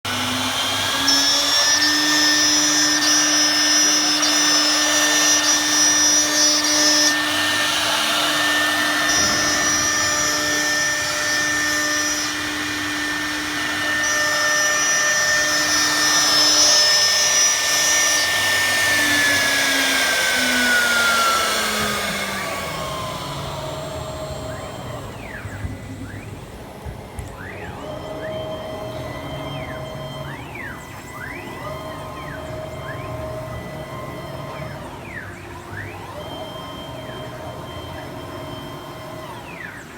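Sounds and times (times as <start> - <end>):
router spindle high whine: 0.0 - 39.9
high whistle: 7.8 - 12.4, 27.3 - 39.9.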